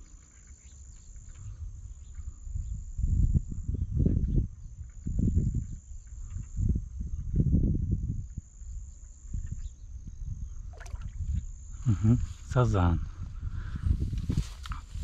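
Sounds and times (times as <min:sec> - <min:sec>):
crickets trilling: 0:00.0 - 0:15.0.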